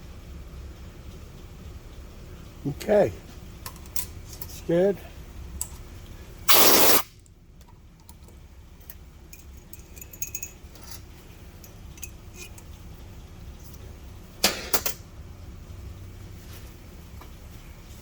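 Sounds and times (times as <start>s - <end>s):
short loud hiss: 6.5s - 7.2s
metal tools clinking: 8.8s - 12.7s.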